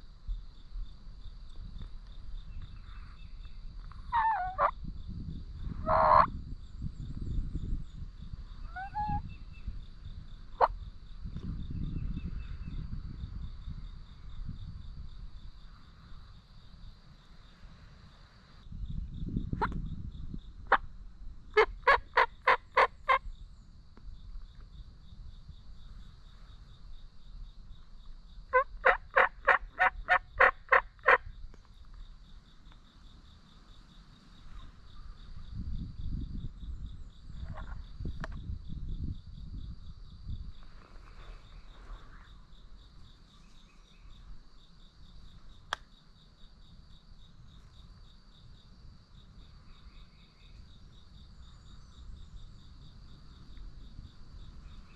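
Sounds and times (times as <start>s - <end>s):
high insect trill: 0.0s - 54.9s
turkey yelps: 4.1s - 4.7s, 5.8s - 6.3s, 8.7s - 9.2s, 21.6s - 23.2s, 28.5s - 31.2s.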